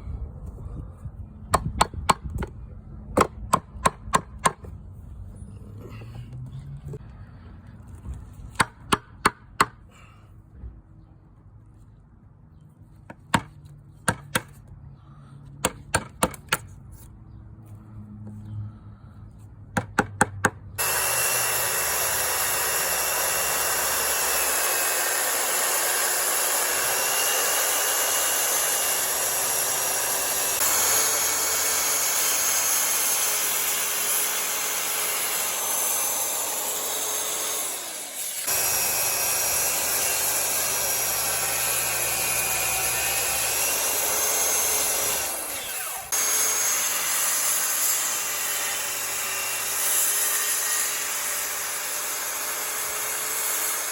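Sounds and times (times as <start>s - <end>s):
power tool whining: 20.8s - 53.9s.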